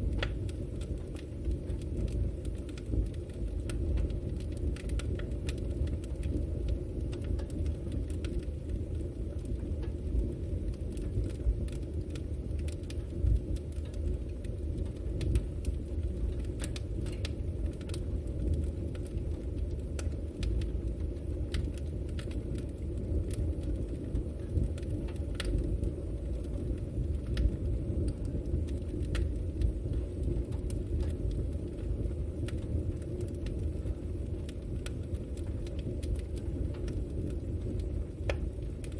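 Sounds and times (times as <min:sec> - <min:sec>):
burning wood crackling and popping: 0:00.0 - 0:38.9
campfire rumble: 0:00.0 - 0:38.9.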